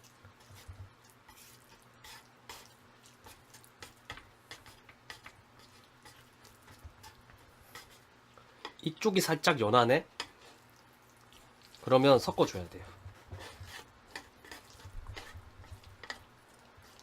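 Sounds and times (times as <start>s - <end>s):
wet squelches of noodles mixing: 0.0s - 17.0s.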